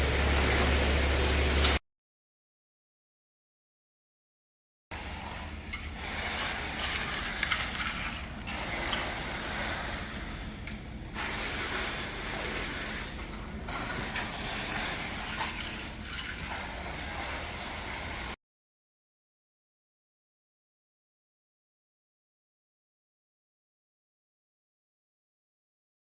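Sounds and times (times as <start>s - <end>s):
wet concrete scraping and sliding: 5.0s - 18.4s.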